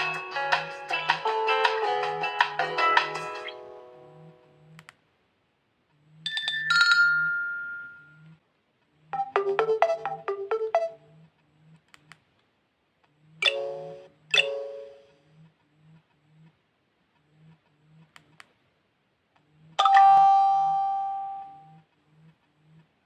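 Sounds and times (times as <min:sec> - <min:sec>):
phone ringtone chime: 0:06.3 - 0:08.2, 0:19.8 - 0:21.7.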